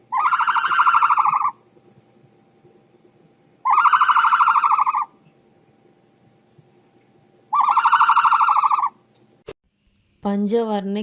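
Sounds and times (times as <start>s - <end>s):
rapidly pulsed animal call: 0.0s - 1.6s, 3.6s - 5.2s, 7.5s - 9.0s.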